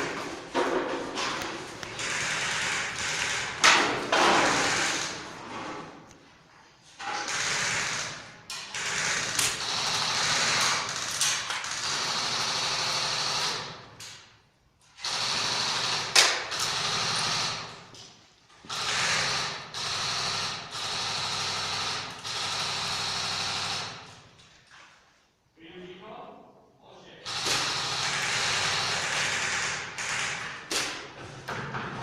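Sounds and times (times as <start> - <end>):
airsoft gun firing full auto: 7.2 - 13.8, 15.0 - 17.7, 18.7 - 24.1, 27.3 - 31.1.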